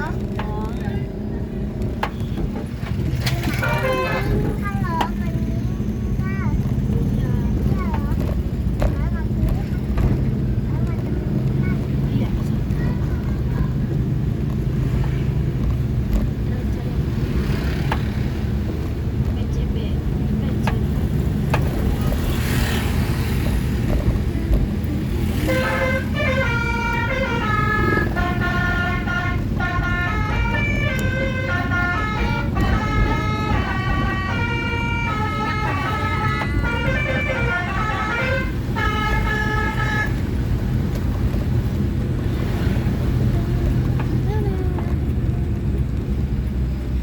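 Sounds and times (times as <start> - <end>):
engine rumble: 0.0 - 47.0
air horn tooting a melody: 3.3 - 4.6, 25.3 - 40.4.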